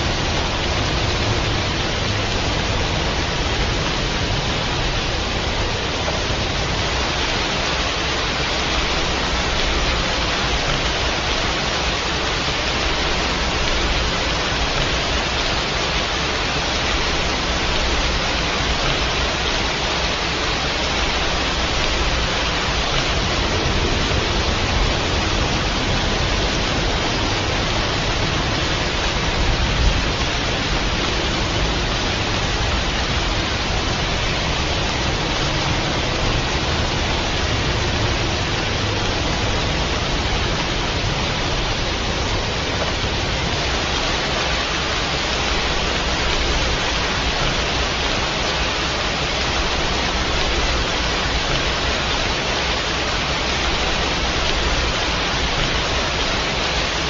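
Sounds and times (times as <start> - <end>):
heavy rain hiss: 0.0 - 57.0
deep low rumble: 21.4 - 43.8.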